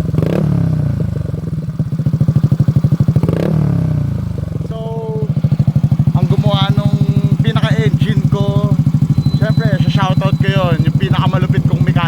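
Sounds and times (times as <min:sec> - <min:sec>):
scooter engine idling and revving: 0:00.0 - 0:12.0.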